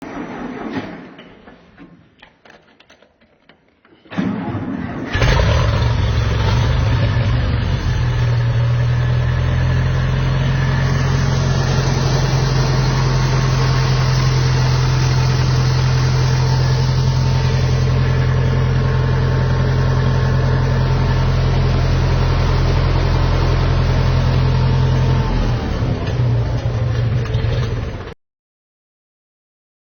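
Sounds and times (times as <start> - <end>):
tractor engine idling: 5.1 - 28.2.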